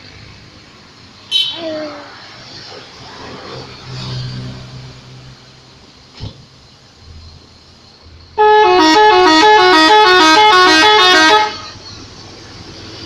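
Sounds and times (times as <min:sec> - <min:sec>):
multi-tone air horn melody: 0:08.4 - 0:11.8.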